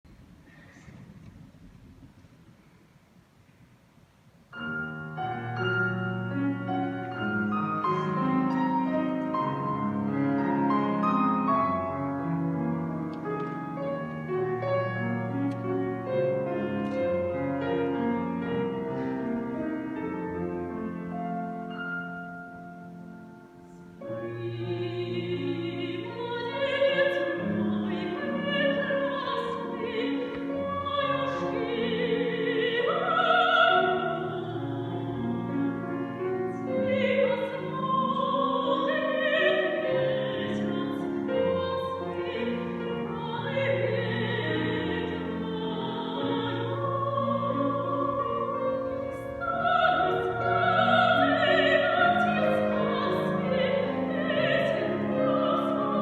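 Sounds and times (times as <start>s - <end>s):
woman singing operatically: 24.2s - 56.0s.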